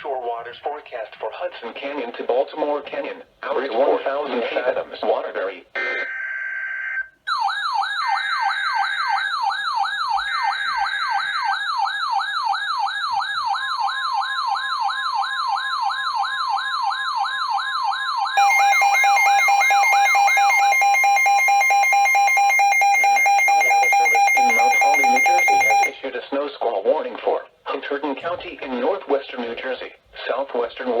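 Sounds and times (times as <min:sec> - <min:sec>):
fast-pulsing alarm beep: 0:18.4 - 0:26.0.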